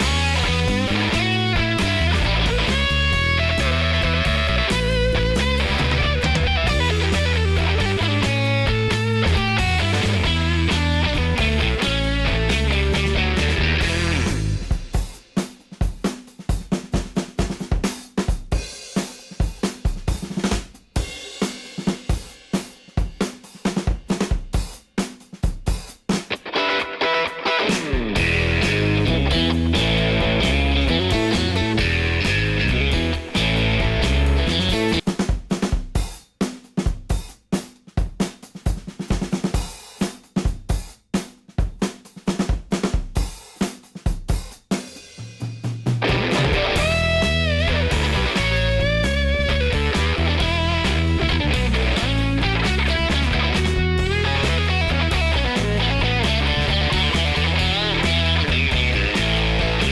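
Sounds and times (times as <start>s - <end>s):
rock guitar: 0.0s - 15.2s, 26.1s - 35.0s, 45.9s - 59.9s
rock drum kit playing: 0.0s - 59.9s.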